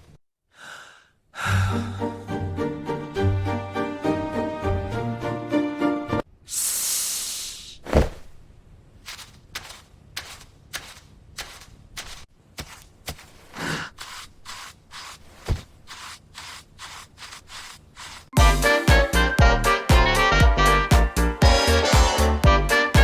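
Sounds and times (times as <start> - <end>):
heavy thump: 7.8 - 8.4
soft scuffing footsteps: 7.8 - 8.4, 9.0 - 18.3.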